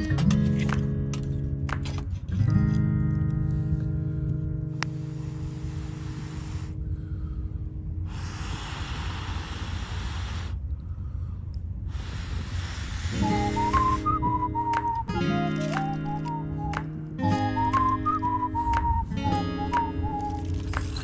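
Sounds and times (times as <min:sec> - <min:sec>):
guitar music: 0:00.0 - 0:06.1, 0:13.1 - 0:21.0
low steady rumble: 0:02.2 - 0:15.2
air blown through a pipe: 0:04.8 - 0:20.8.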